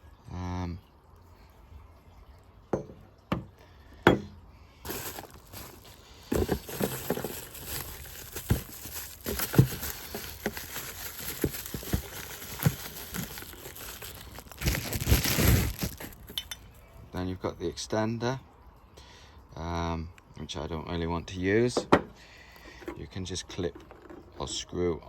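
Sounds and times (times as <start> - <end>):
plastic wrapping rustling: 4.8 - 16.6, 23.6 - 24.6.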